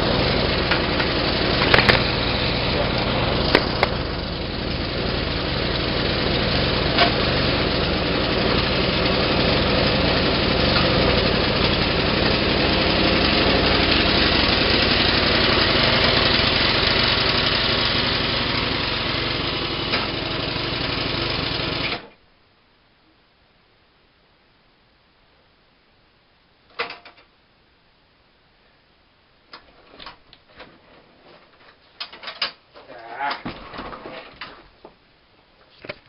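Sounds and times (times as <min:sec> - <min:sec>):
snowblower engine running: 0:00.0 - 0:22.1.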